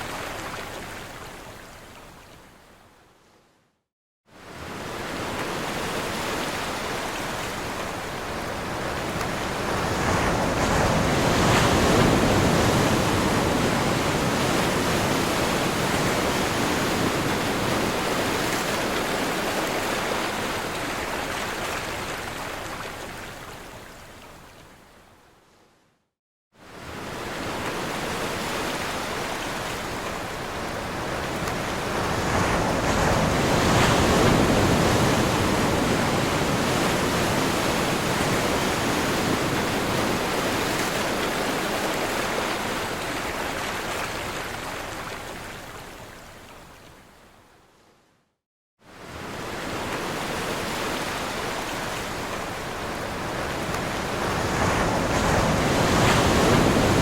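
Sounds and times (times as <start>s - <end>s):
waves breaking: 48.9s - 57.0s.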